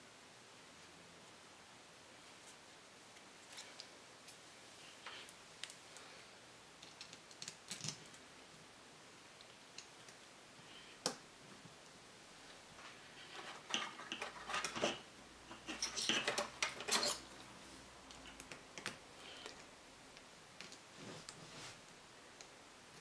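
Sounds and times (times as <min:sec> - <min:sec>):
small metal parts and tools clinking: 0:13.3 - 0:17.5.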